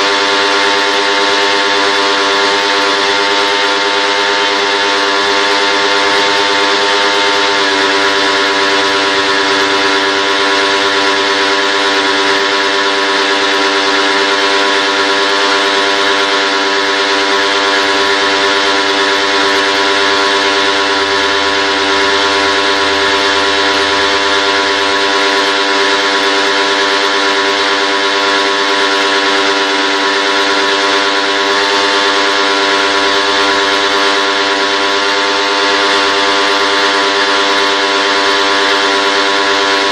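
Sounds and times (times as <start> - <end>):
machine droning hum: 16.0 - 33.6.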